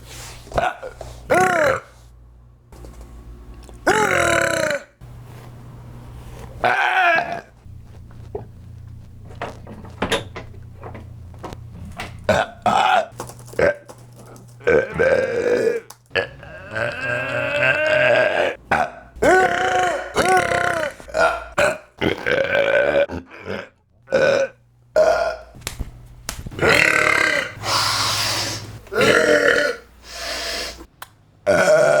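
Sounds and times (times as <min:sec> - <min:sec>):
person burping loudly: 0:00.6 - 0:01.9, 0:03.8 - 0:05.0, 0:12.3 - 0:13.9, 0:14.5 - 0:25.6, 0:26.6 - 0:28.0, 0:28.9 - 0:29.9, 0:31.4 - 0:32.0.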